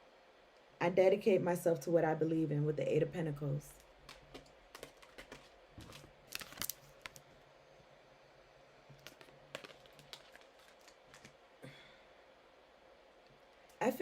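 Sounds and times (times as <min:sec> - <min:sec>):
cards clicking and snapping: 0:04.0 - 0:07.3, 0:09.0 - 0:11.4.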